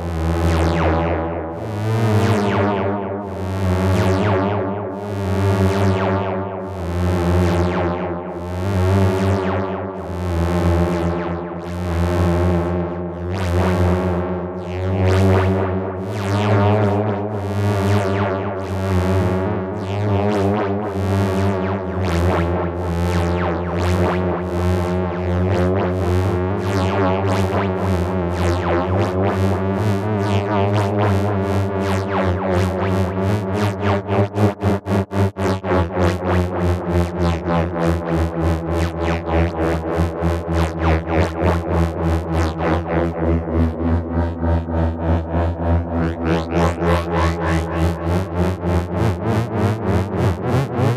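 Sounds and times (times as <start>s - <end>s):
synthesizer drone: 36.7s - 50.9s.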